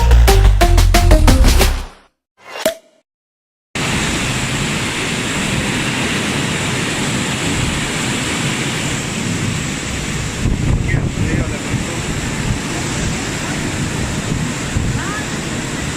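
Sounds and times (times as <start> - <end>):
intro music note: 0.0 - 1.9
heavy rain in strong wind: 3.8 - 15.9.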